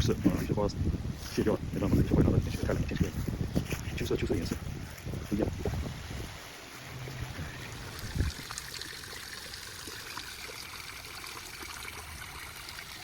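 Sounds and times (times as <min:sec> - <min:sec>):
water trickling over stones: 0:07.6 - 0:13.0.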